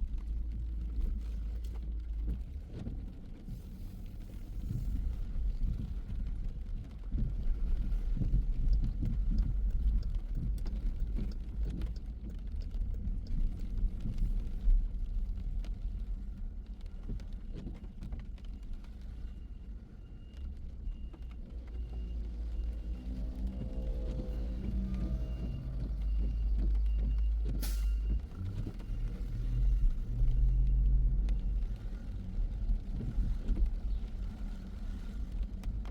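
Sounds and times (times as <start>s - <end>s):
car engine and tyres on wet road: 0.0s - 35.9s
faint high beep: 21.8s - 28.2s.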